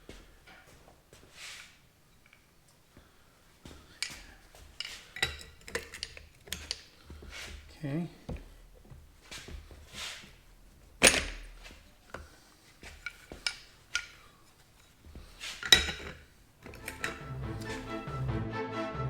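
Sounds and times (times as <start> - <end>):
metal parts and tools clinking: 4.0 - 7.6, 11.0 - 12.2, 12.8 - 18.0.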